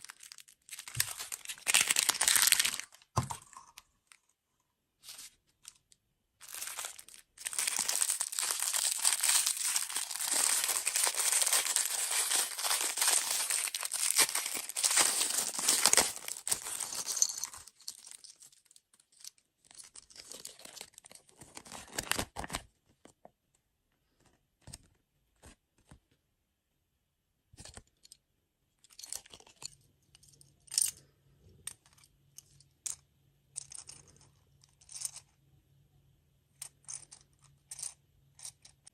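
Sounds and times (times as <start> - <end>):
wrapper tearing and crinkling: 0.0 - 3.1, 6.4 - 18.5.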